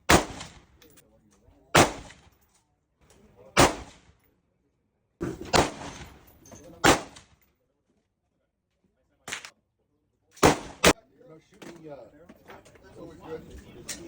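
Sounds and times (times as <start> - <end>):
loud gunshots: 0.0 - 0.6, 1.7 - 2.2, 3.6 - 4.0, 5.2 - 6.2, 6.8 - 7.3, 10.4 - 11.0
softer gunshot: 5.2 - 6.2, 10.4 - 11.0.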